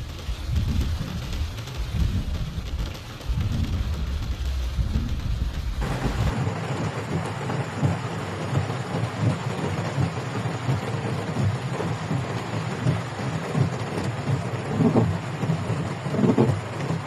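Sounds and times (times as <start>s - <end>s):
deep rumble: 0.0s - 6.5s
heavy rain hissing: 0.0s - 17.0s.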